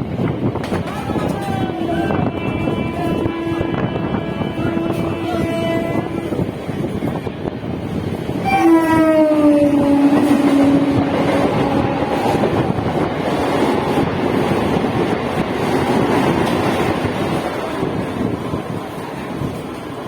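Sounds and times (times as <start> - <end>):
train rumbling by: 0.0 - 20.0
train horn: 0.9 - 7.3, 8.4 - 15.5.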